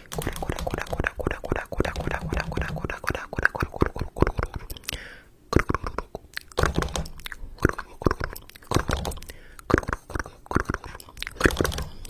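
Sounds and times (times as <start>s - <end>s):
rapid crunching clicks: 0.0s - 1.1s, 10.7s - 12.0s.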